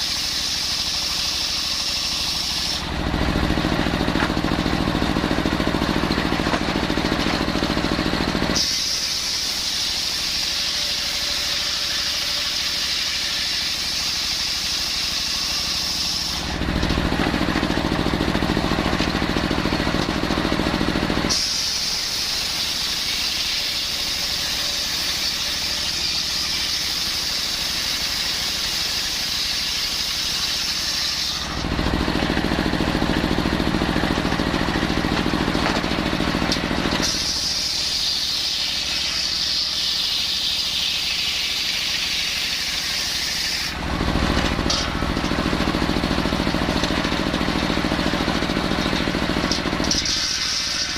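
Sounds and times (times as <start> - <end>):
circular saw blade cutting wood: 0.0 - 50.9
saw drive running free: 0.0 - 50.9.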